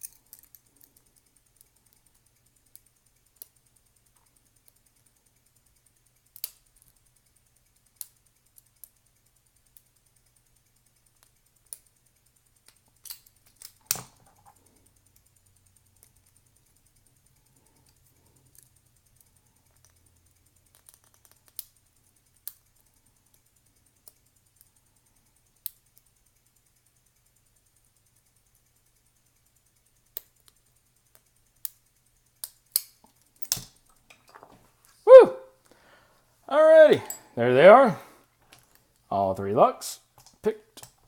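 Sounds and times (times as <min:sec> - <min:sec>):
metallic clicks of lock picking: 0:00.0 - 0:03.6, 0:06.2 - 0:09.0, 0:12.6 - 0:23.4, 0:30.1 - 0:34.4, 0:37.0 - 0:37.2.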